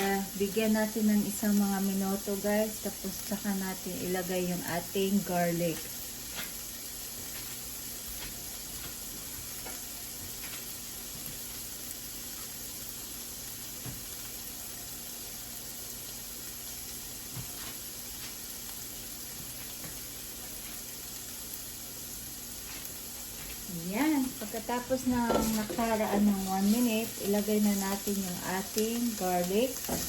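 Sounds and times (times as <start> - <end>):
onion frying in oil: 0.0 - 30.0.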